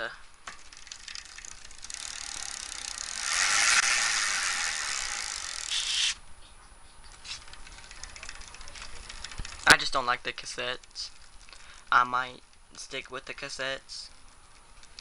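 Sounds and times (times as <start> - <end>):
bike hub freewheeling buzz: 0.4 - 6.2, 7.1 - 9.8.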